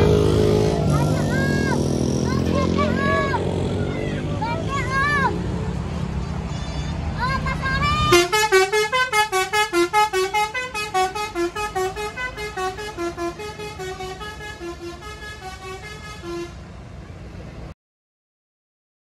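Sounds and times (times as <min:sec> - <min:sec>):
bus horn playing melody: 0:07.8 - 0:16.7.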